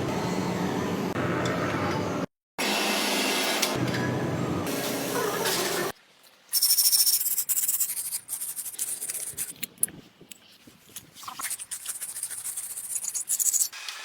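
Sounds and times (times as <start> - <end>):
scratchy rubbing and scraping: 6.6 - 13.8.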